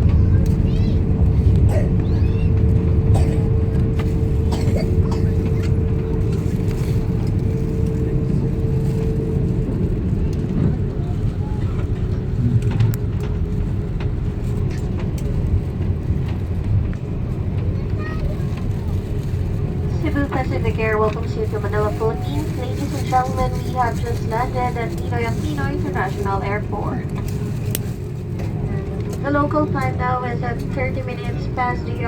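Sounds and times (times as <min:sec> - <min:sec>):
engine and airframe rumble: 0:00.0 - 0:32.0
steady hum: 0:19.5 - 0:28.1.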